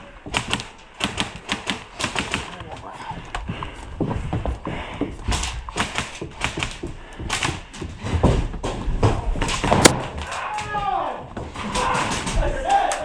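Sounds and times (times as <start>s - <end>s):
airsoft guns firing: 0.3s - 2.7s, 5.3s - 7.8s, 9.4s - 10.8s
dull thuds: 2.6s - 12.7s.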